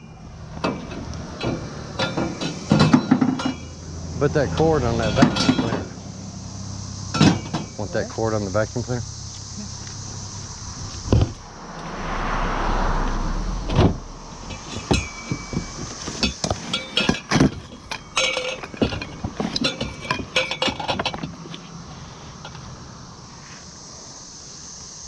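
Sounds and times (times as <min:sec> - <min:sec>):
scrap metal clanking: 0:00.6 - 0:03.8, 0:04.6 - 0:06.0, 0:13.7 - 0:21.7
rush of noise: 0:10.4 - 0:16.2.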